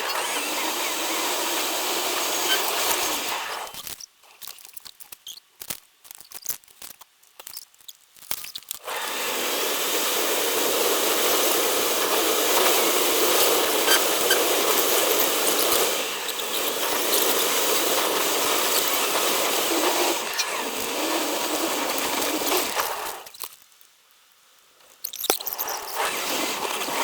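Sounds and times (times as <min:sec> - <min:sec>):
scattered crackles: 0:02.6 - 0:08.8, 0:12.5 - 0:27.0.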